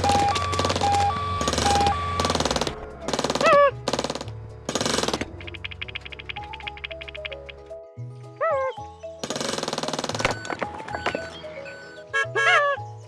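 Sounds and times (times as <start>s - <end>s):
fast ticking: 0.0s - 7.7s, 9.2s - 12.2s
rapid rattling bursts: 0.0s - 7.7s, 9.2s - 11.3s
quick downward chirp: 10.1s - 13.0s.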